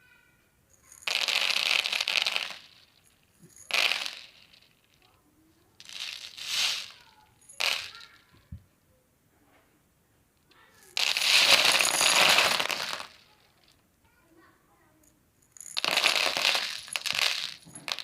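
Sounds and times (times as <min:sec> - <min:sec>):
toy tricycle rattling and whirring: 0:05.8 - 0:08.4, 0:10.5 - 0:13.8, 0:15.6 - 0:18.0.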